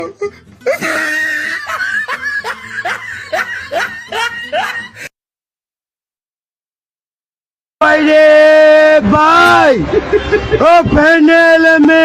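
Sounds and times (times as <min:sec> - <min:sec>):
snickering laugh: 0:00.0 - 0:05.1.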